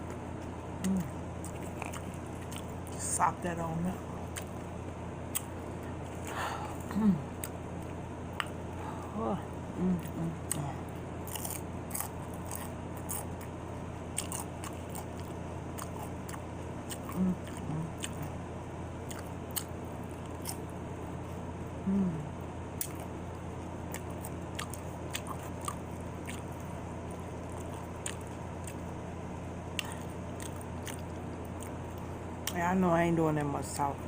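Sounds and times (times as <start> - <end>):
chewing and crunching nachos: 0.0 - 3.1, 4.2 - 8.9, 9.9 - 21.5, 22.8 - 32.6
short vocal sounds: 0.8 - 1.2, 9.0 - 10.9, 21.8 - 22.4.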